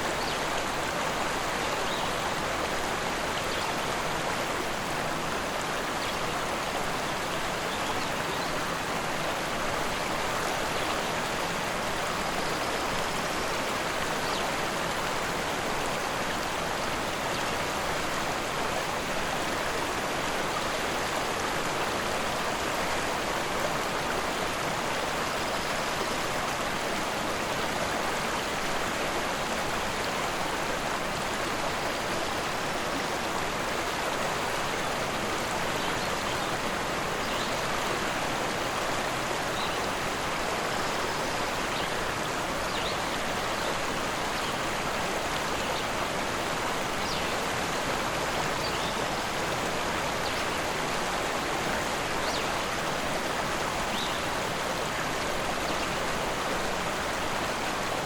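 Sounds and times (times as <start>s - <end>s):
river rushing: 0.0s - 58.0s.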